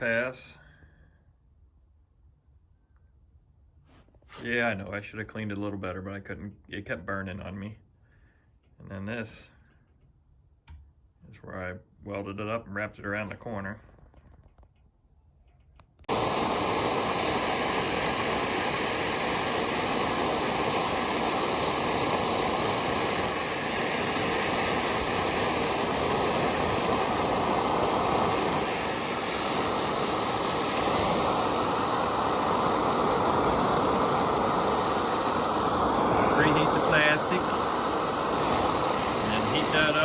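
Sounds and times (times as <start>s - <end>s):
hot-air welding gun blowing: 16.0s - 40.0s.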